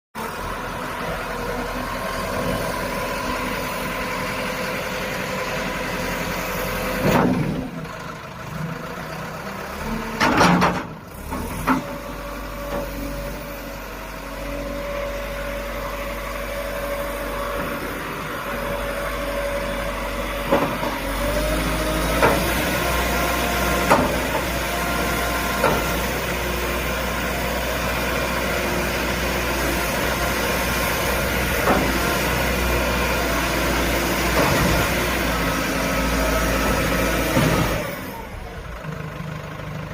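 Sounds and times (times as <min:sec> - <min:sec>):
diesel engine running: 0:00.2 - 0:39.9
machine knocks and clanks: 0:10.2 - 0:11.9.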